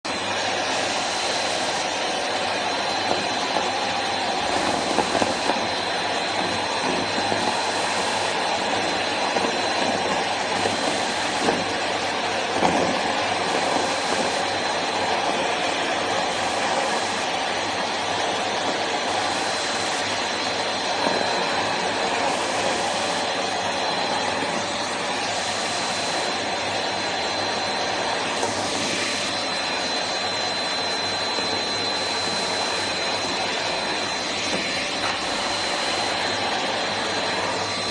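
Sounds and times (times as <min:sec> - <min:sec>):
vacuum cleaner running: 0:00.0 - 0:37.9.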